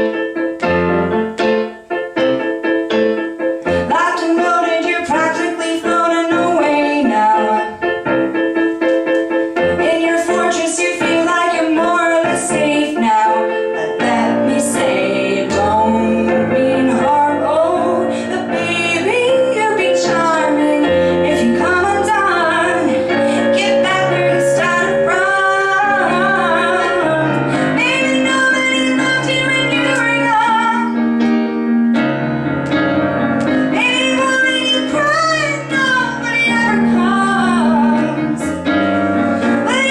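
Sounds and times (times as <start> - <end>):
piano accompaniment: 0.0 - 39.9
woman singing pop song: 3.7 - 8.0, 9.7 - 31.1, 33.6 - 38.8, 39.4 - 39.9.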